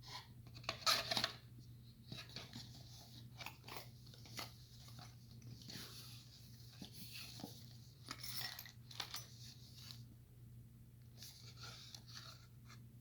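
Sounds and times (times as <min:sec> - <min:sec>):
clicks and rustles of packaging: 0:00.1 - 0:01.5, 0:02.1 - 0:06.0, 0:06.7 - 0:10.0.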